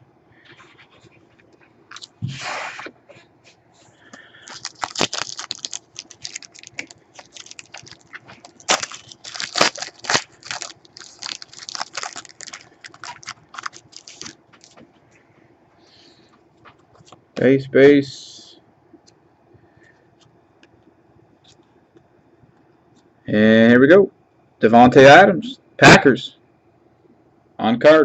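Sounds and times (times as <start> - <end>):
cards crinkling and clicking: 1.9 - 2.2, 4.5 - 14.9
wrapper tearing: 1.9 - 2.2, 4.5 - 14.8.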